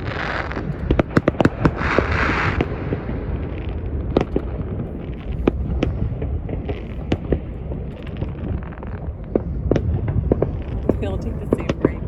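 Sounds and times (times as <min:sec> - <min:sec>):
fireworks bangs and pops: 0:00.0 - 0:12.0
low rumble: 0:00.0 - 0:12.0.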